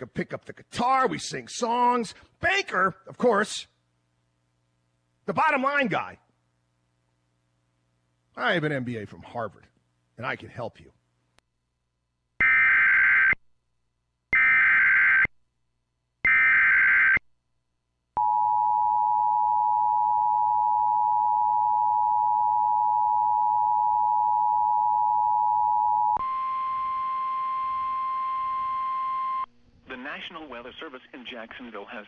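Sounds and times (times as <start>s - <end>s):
single steady tone: 18.2s - 29.5s.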